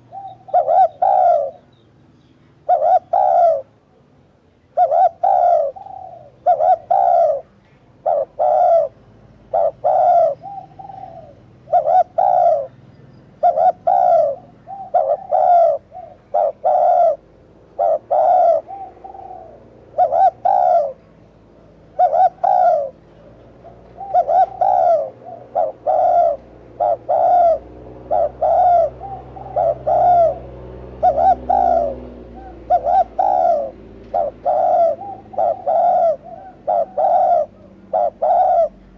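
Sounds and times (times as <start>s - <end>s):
dove cooing: 0.0s - 1.8s, 2.5s - 3.7s, 4.7s - 38.9s.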